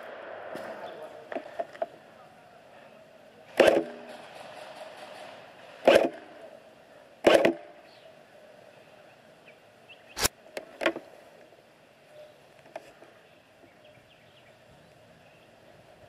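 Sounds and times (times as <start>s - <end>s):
airsoft rifle shots: 3.5s - 6.6s, 7.2s - 7.8s.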